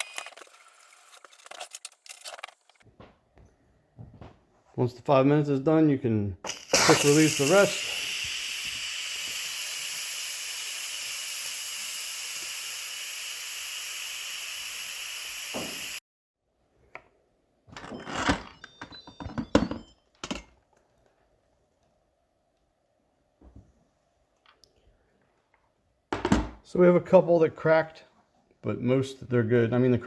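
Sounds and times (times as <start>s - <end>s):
steam hissing from valve: 6.5s - 16.0s.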